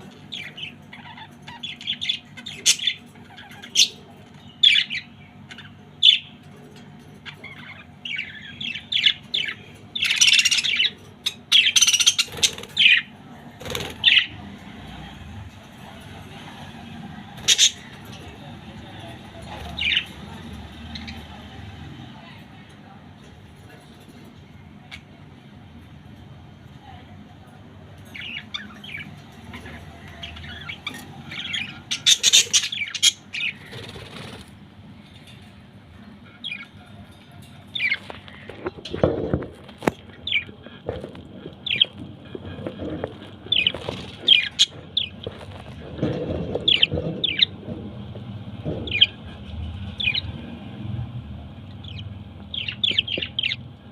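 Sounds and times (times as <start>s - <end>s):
parrots squawking: 0.0s - 14.8s, 15.8s - 21.4s, 28.1s - 34.6s, 36.2s - 39.1s, 39.7s - 47.7s, 48.7s - 50.2s, 51.8s - 53.9s.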